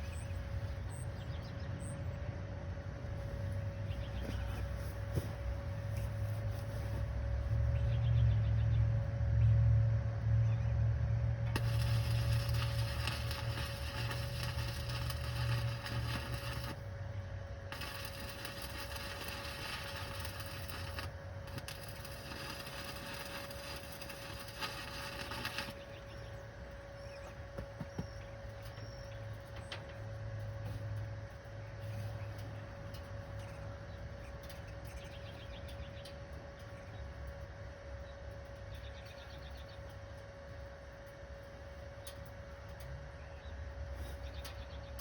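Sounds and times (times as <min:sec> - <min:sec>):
low hum: 0:00.0 - 0:45.0
welding arc crackling: 0:11.5 - 0:28.7.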